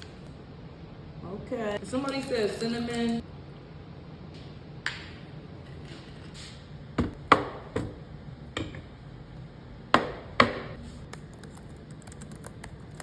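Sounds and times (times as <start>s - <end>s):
sharp knocks on kitchen counter: 10.0s - 10.7s.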